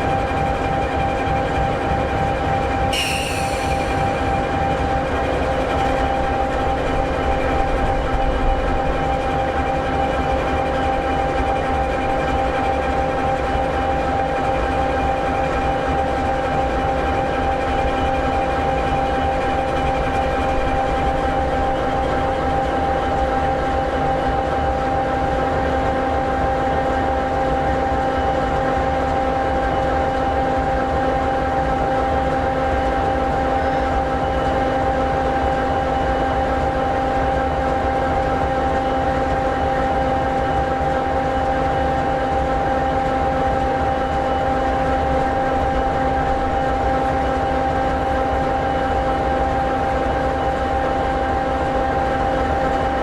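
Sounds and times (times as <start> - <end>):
diesel locomotive engine idling: 2.6 - 8.4.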